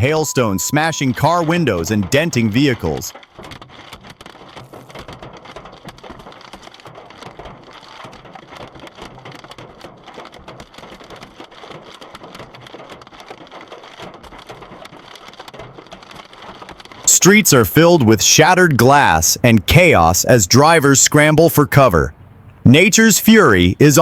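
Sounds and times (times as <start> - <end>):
hail clattering on hard surfaces: 2.4 - 17.1.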